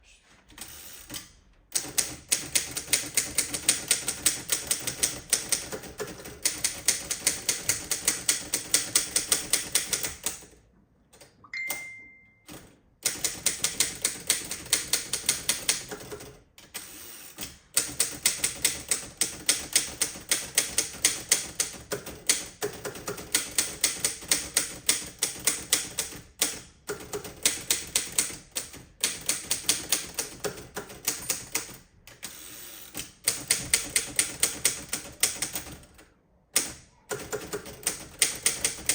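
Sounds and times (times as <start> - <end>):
manual typewriter typing: 0.6 - 10.6, 12.5 - 36.0, 36.6 - 38.9
typewriter bell ring: 11.5 - 12.6.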